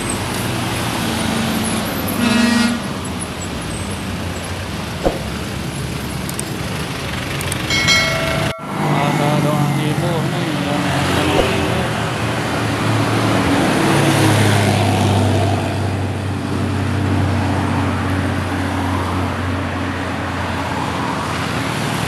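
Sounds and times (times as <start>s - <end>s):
heavy vehicle engine droning: 0.0s - 17.0s
tyre and road noise: 0.0s - 22.0s.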